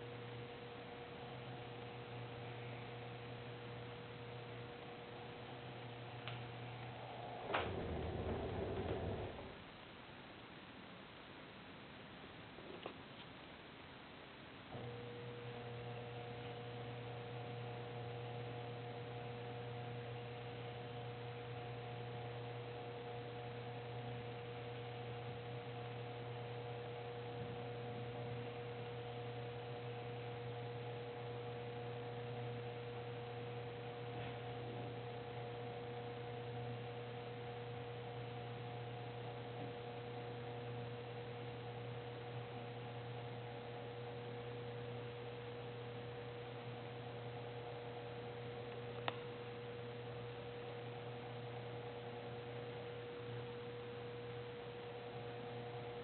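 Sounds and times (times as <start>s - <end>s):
electric motor humming: 1.5s - 9.6s.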